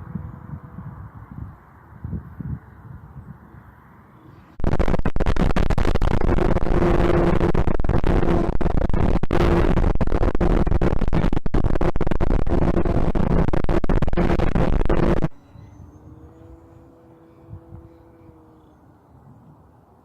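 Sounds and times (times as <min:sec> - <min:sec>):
wind rushing over camera: 0:00.0 - 0:16.8
electric motor and propeller buzz: 0:00.0 - 0:20.0
faint wavering hum: 0:03.1 - 0:20.0.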